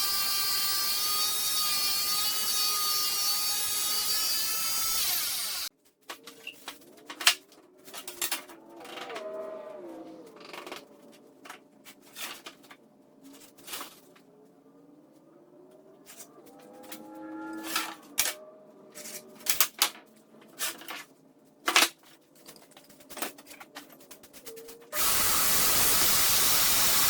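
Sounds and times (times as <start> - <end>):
faint sliding pitched tones: 13.2 - 19.4.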